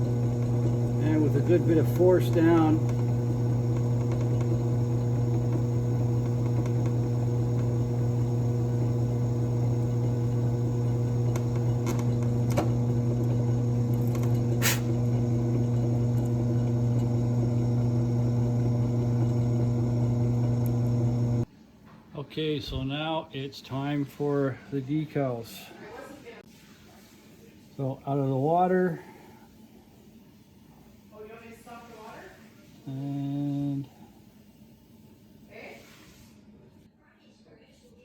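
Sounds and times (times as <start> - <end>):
drill press motor humming: 0.0 - 21.5.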